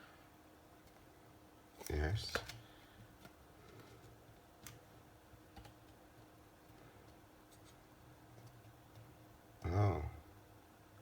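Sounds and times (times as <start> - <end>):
faint clicks of small parts: 1.8 - 6.0.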